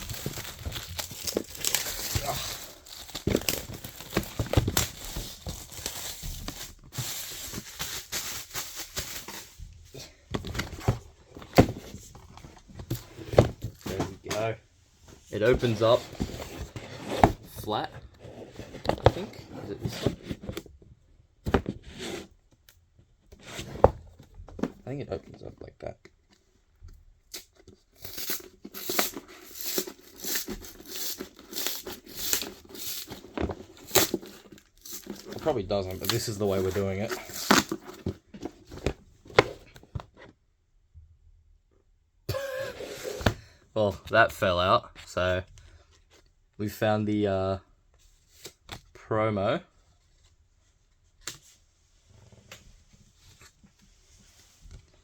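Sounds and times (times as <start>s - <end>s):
packaging being torn and crinkled: 0.0s - 9.2s, 28.0s - 33.2s
plastic shrink wrap crackling: 0.0s - 9.3s.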